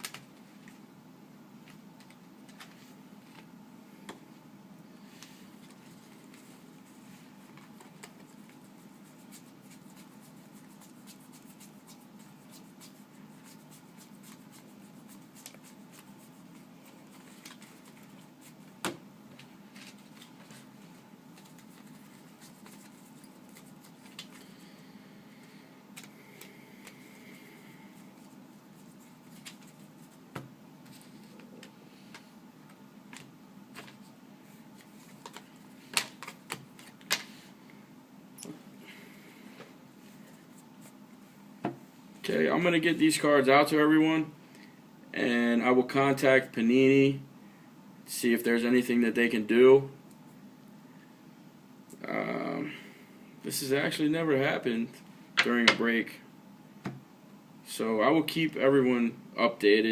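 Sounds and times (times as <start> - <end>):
low steady hum: 0.0 - 59.9
trading cards rustling: 7.4 - 18.6, 19.4 - 24.7, 28.0 - 30.2.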